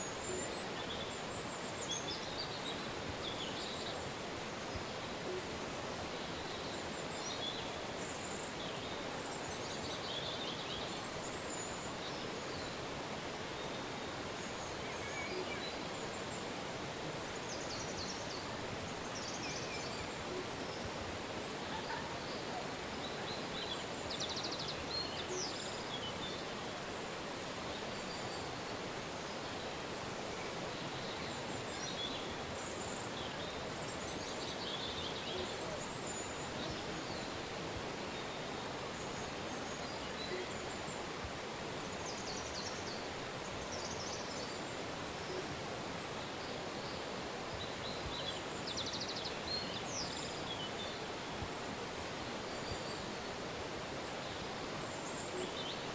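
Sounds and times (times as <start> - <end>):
river water rushing: 0.0 - 55.9
small birds chirping: 0.0 - 55.9.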